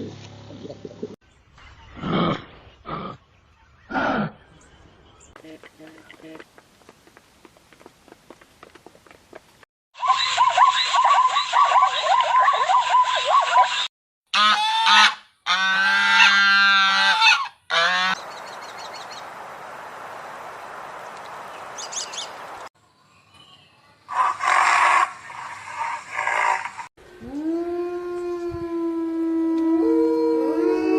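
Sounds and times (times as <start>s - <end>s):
geese honking: 14.3s - 18.3s, 24.1s - 26.9s
harsh bird calls: 17.7s - 22.7s.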